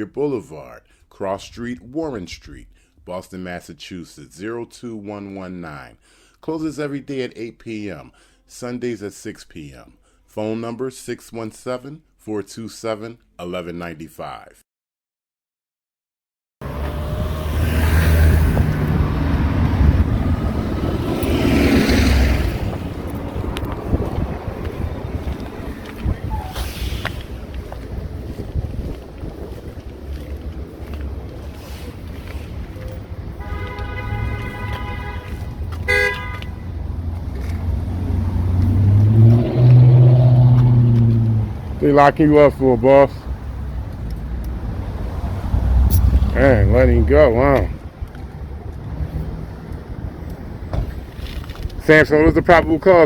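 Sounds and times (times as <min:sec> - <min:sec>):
vehicle engine humming: 0:16.6 - 0:51.8
cars passing: 0:16.6 - 0:53.0
car horn honking: 0:33.3 - 0:37.1.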